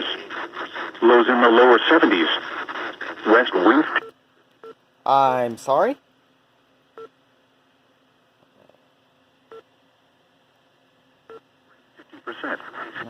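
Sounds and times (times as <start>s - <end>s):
faint two-tone electronic beeps: 11.3s - 11.5s.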